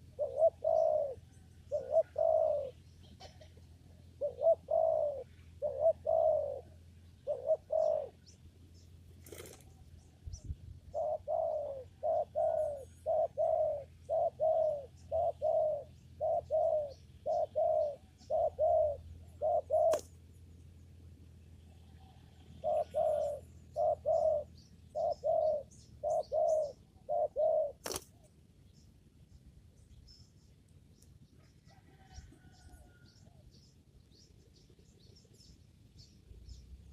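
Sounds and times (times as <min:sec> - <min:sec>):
dove cooing: 0:00.0 - 0:08.4, 0:09.2 - 0:09.8, 0:10.8 - 0:20.2, 0:22.0 - 0:28.2, 0:31.4 - 0:33.5
small birds chirping: 0:00.0 - 0:36.9.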